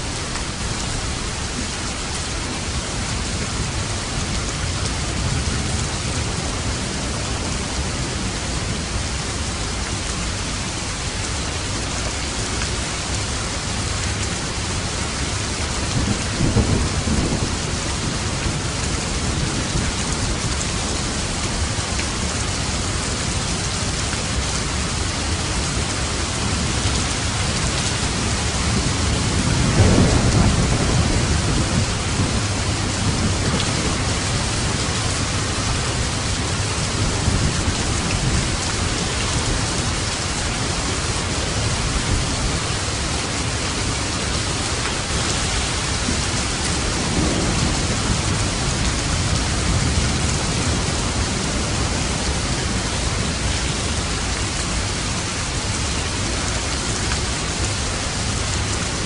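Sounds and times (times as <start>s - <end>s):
heavy rain on a roof: 0.0s - 59.0s
thunder rumbling: 15.8s - 20.7s, 25.9s - 53.5s.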